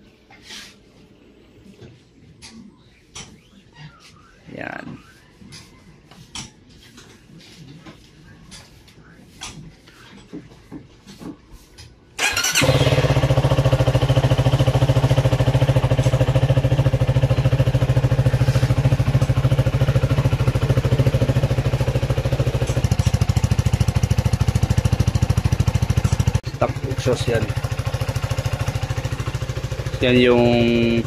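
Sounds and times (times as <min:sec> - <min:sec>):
motorcycle engine starting and idling: 0:12.2 - 0:31.0.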